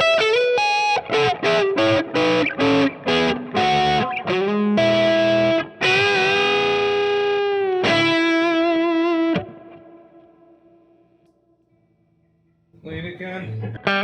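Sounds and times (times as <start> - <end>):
overdriven electric guitar chords: 0.0 - 11.5, 13.4 - 14.0.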